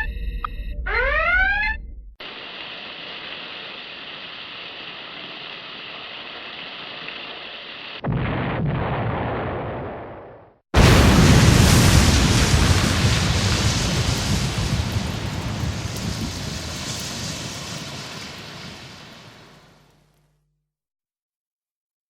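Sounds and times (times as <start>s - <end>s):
alarm whoop: 0.8s - 1.8s
rushing noise: 2.2s - 8.0s, 10.8s - 20.0s
steady hiss: 2.2s - 8.0s, 12.4s - 20.3s.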